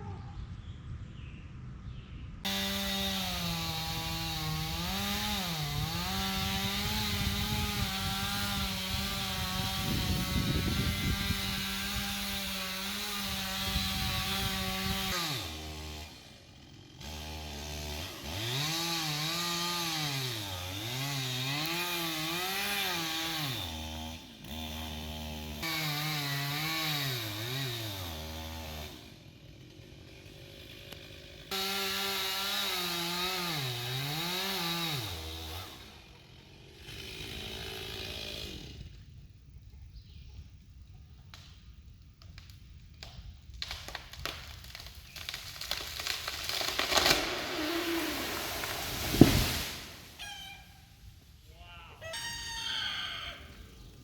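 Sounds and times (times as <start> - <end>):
chainsaw revving: 2.5 - 39.0, 45.2 - 50.2
chainsaw cutting wood: 2.5 - 39.2, 42.2 - 51.4.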